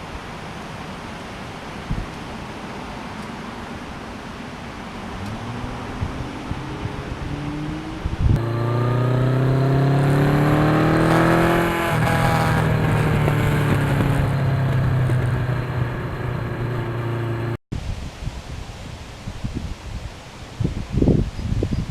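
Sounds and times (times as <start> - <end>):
wind rush: 3.6 - 21.9
motorcycle engine accelerating: 4.9 - 17.6.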